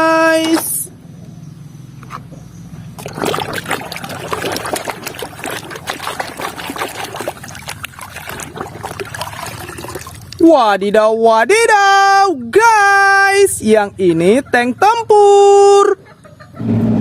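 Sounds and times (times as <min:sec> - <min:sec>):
water trickling and splashing: 0:02.9 - 0:10.5.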